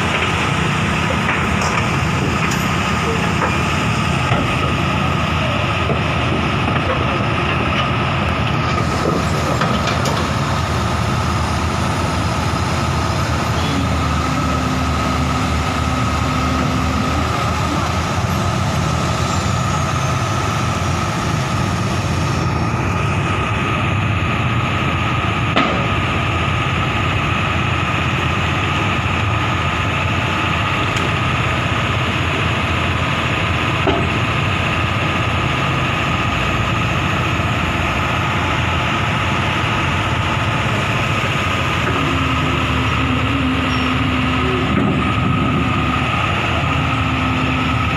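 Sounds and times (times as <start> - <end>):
excavator engine running: 0.0 - 47.9.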